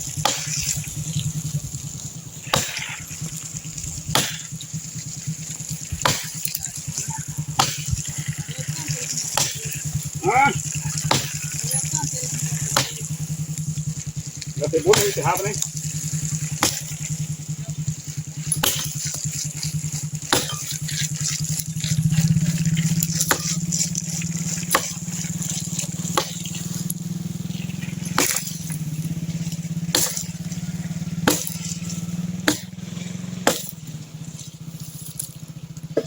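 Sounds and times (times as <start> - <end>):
steady low hum: 0.0 - 36.0
axe chopping wood: 0.1 - 1.4, 2.5 - 3.4, 4.1 - 4.7, 5.8 - 6.7, 7.5 - 8.2, 9.2 - 11.8, 12.4 - 13.7, 14.8 - 17.3, 18.5 - 33.9.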